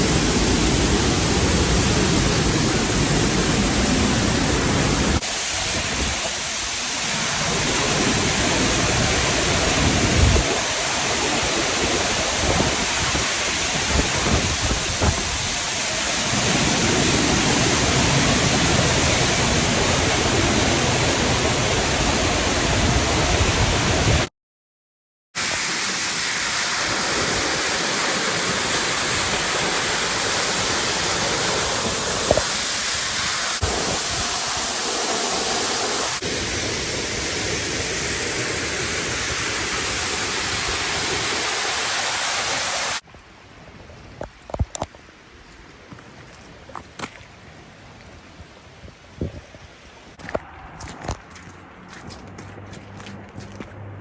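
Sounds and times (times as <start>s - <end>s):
waterfall pouring: 25.4s - 43.0s.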